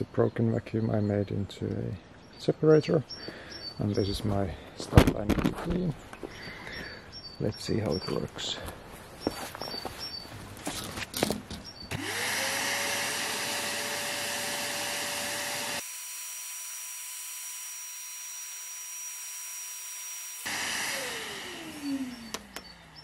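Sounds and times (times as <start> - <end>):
vacuum cleaner motor whine: 11.9 - 22.8.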